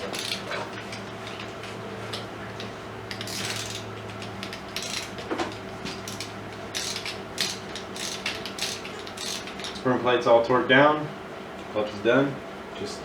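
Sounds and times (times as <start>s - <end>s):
ratchet wrench clicking: 0.0s - 0.4s, 3.1s - 5.2s, 6.0s - 9.8s.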